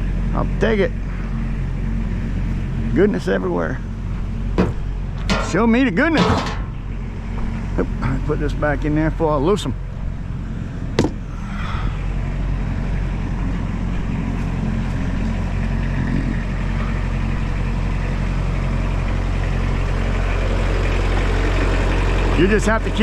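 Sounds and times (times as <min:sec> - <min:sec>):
tractor engine running: 0:00.0 - 0:23.0.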